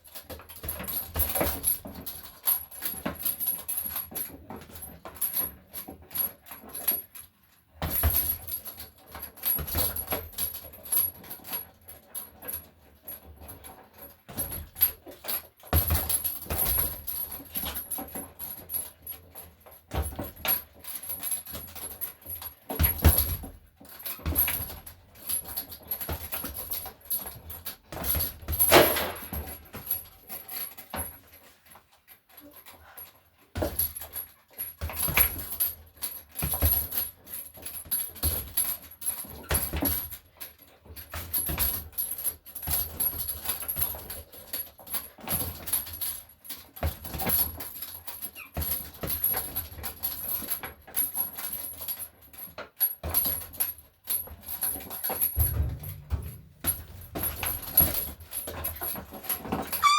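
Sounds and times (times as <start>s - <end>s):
knocks and clattering: 28.0s - 30.0s, 54.8s - 59.9s.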